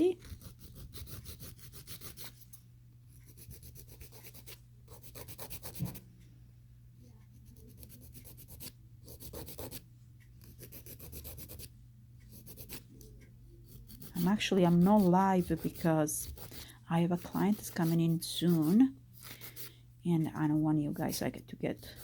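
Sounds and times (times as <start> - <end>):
nail file rasping on a nail: 0.2 - 2.4, 3.2 - 6.0, 7.4 - 9.8, 10.4 - 11.7, 12.3 - 12.8, 13.7 - 19.7, 21.8 - 22.0.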